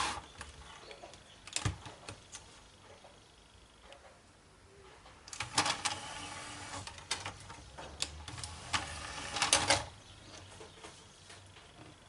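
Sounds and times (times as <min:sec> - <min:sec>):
disc drive whirring and clicking: 0:00.0 - 0:02.4, 0:05.1 - 0:10.7.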